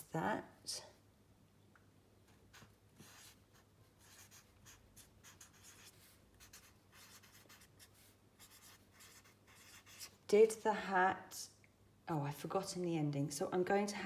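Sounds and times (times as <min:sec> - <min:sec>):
pen scratching handwriting: 0:04.0 - 0:10.1.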